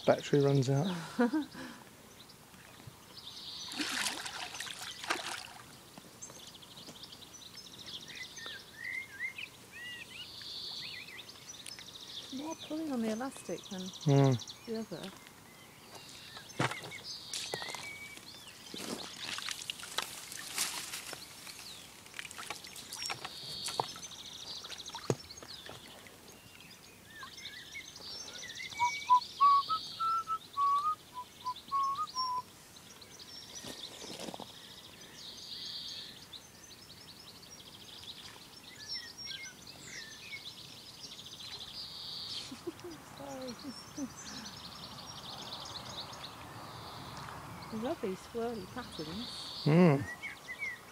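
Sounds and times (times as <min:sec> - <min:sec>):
wild birds singing: 0:00.0 - 0:50.9
clear whistled bird notes: 0:27.1 - 0:32.5.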